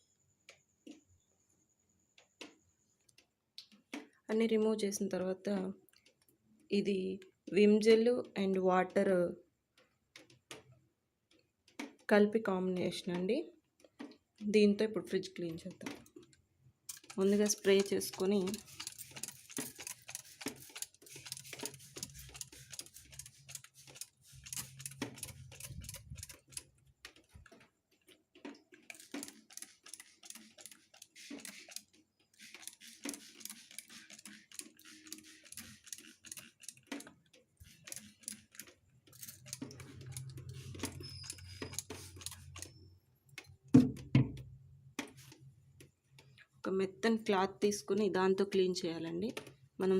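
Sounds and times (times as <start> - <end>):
spray bottle clicking and hissing: 16.9 - 26.7, 28.5 - 42.8.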